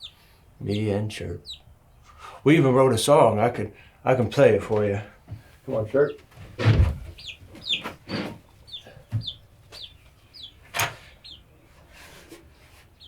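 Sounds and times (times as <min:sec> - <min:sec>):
bird chirping: 0:00.0 - 0:02.2, 0:05.7 - 0:11.7
brief thumps or rustles: 0:06.4 - 0:08.4.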